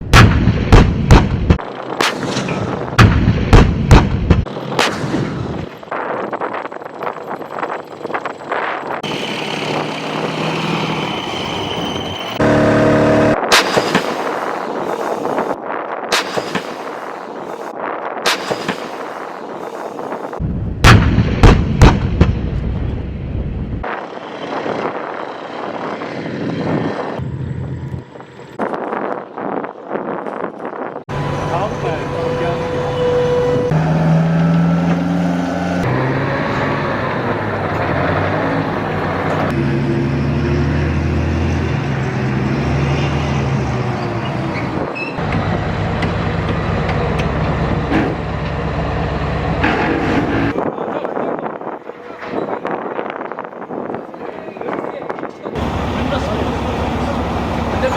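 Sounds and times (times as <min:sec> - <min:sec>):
gunshots: 0:00.0 - 0:05.8, 0:13.4 - 0:15.2, 0:20.8 - 0:22.7.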